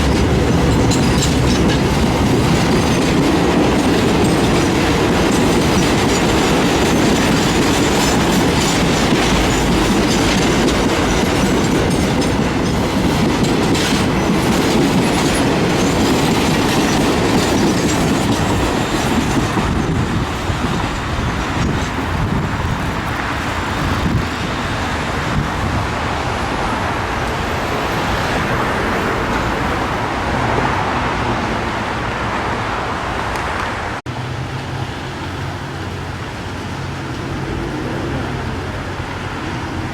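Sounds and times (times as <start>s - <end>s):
freight train wheels clattering: 0.0s - 26.3s.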